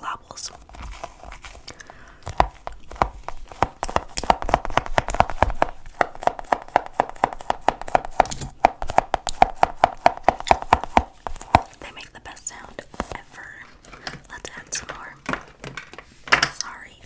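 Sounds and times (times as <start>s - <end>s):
sticky tacky clicks and pops: 2.2s - 11.9s.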